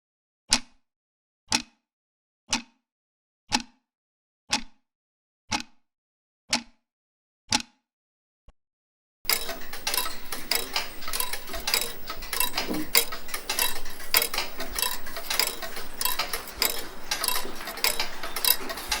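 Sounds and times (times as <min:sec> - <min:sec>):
clockwork ticking: 0:09.3 - 0:19.0.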